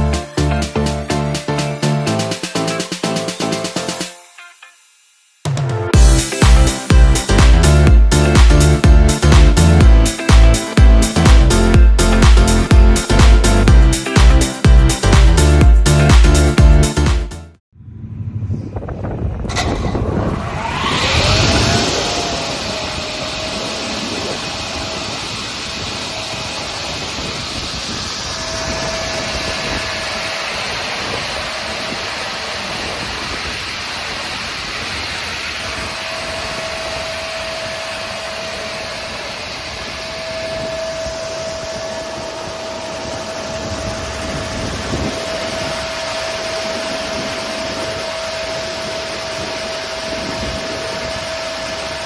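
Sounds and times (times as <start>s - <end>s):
thin whine: 17.8s - 52.0s
multi-rip saw running: 19.5s - 52.0s.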